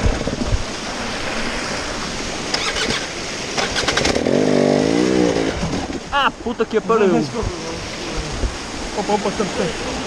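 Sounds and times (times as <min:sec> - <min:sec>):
off-road vehicle driving: 0:01.6 - 0:06.4.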